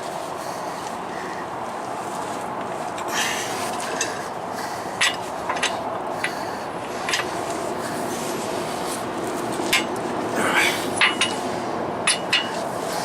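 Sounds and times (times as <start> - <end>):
steady background noise: 0.0 - 13.0.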